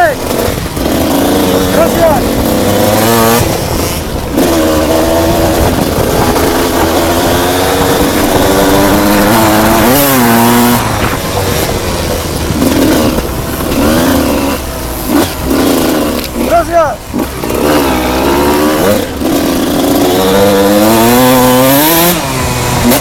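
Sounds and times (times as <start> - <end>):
motorcycle engine revving: 0.0 - 23.0.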